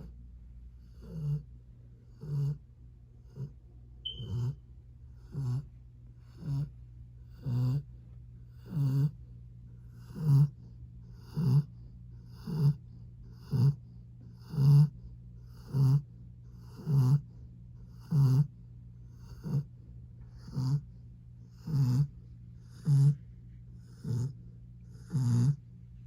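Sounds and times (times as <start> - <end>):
dog snoring: 0.7 - 25.6.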